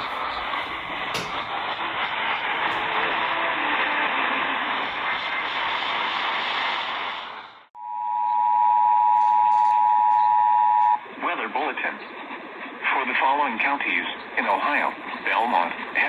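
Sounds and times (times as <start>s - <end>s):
radio static hiss: 9.7s - 16.0s.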